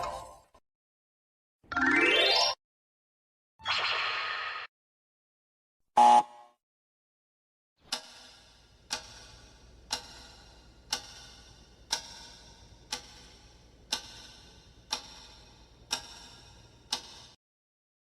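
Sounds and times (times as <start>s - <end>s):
clock ticking: 7.8s - 17.4s.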